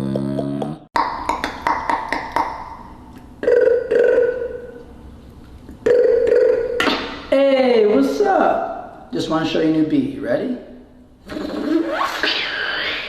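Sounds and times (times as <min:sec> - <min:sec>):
buzzing vocal tones: 0:00.0 - 0:04.9, 0:05.7 - 0:07.4, 0:11.2 - 0:13.0
beatboxed mouth clicks: 0:00.0 - 0:07.2, 0:11.2 - 0:13.0.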